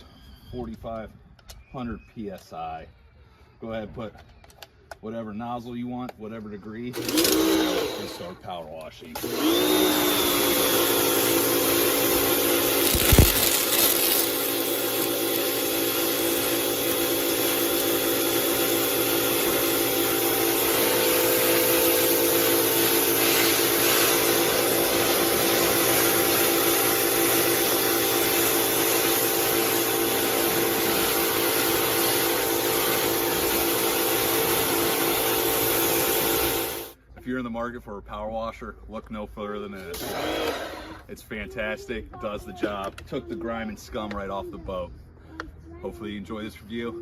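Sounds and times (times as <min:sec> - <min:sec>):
pressure washer motor hum: 0:06.9 - 0:37.0, 0:39.9 - 0:41.0
water jet hissing: 0:11.2 - 0:36.9.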